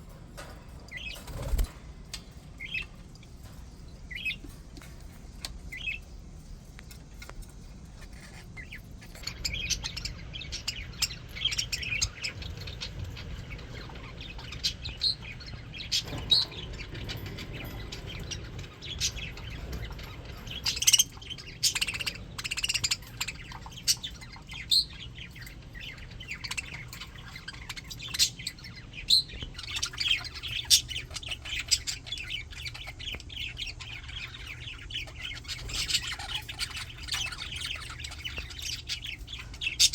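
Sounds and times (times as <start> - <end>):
budgies chattering: 0.0 - 39.9.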